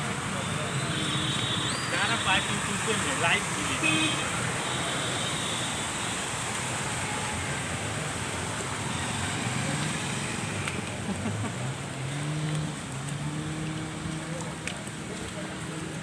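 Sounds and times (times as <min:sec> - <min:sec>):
heavy rain hissing: 0:00.0 - 0:11.8.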